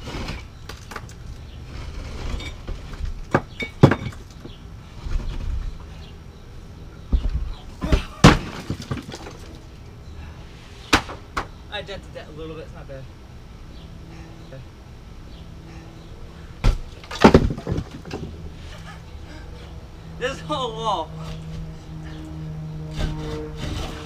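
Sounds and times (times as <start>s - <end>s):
concrete block cracking and crashing: 0.0s - 4.5s, 7.8s - 9.7s, 16.6s - 18.5s.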